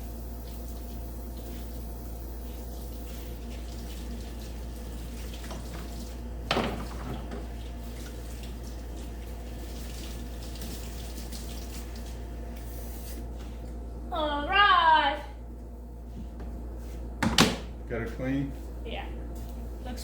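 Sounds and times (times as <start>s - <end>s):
water running: 0.0s - 12.7s
constant low hum: 0.0s - 20.0s.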